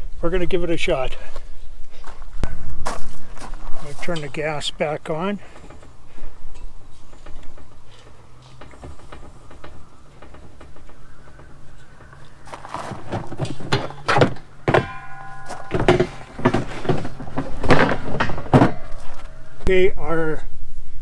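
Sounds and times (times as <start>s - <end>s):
door knocks and thumps: 7.2s - 19.4s.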